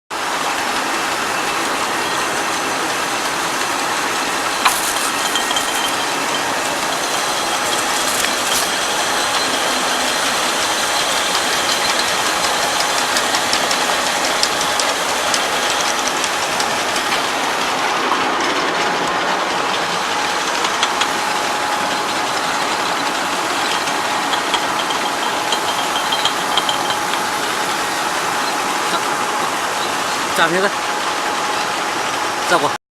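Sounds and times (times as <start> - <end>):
bottle washing machine running: 0.2 - 32.8
bottles clicking and knocking: 4.6 - 17.4, 20.3 - 30.0.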